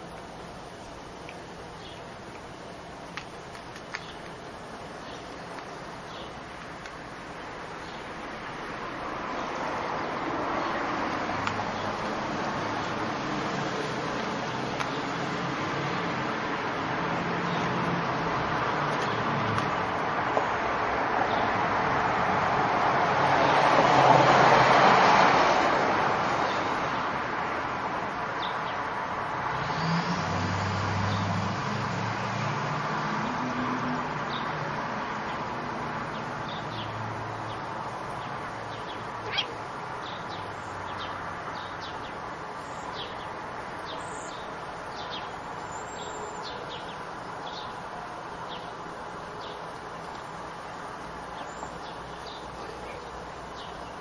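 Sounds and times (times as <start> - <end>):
vehicle passing: 6.3 - 54.0
bird chirps: 38.2 - 47.8, 51.3 - 54.0.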